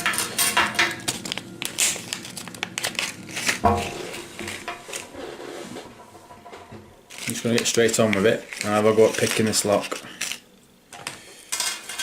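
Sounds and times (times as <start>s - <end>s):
packaging crinkling: 1.0s - 5.3s, 7.1s - 11.2s.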